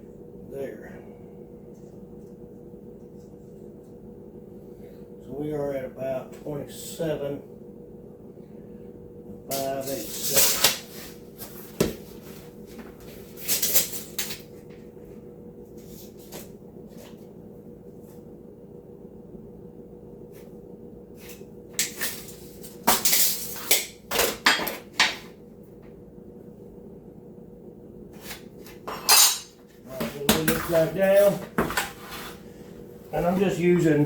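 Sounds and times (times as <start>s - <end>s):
faint steady hum: 0.0s - 34.0s
tools and screws clattering: 28.9s - 29.5s.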